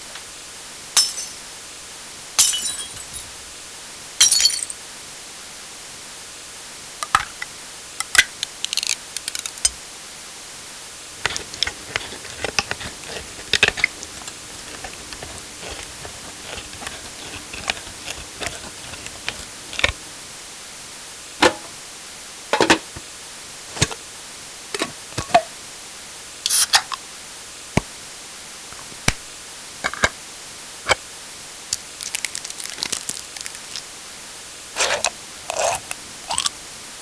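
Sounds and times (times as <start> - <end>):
steady hiss: 4.8 - 37.0
can or bottle clicking: 7.0 - 9.8, 11.2 - 20.0, 26.5 - 27.0.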